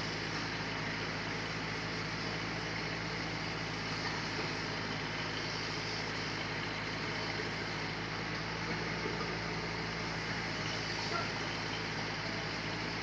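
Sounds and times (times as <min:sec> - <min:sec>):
sawmill machinery running: 0:00.0 - 0:13.0.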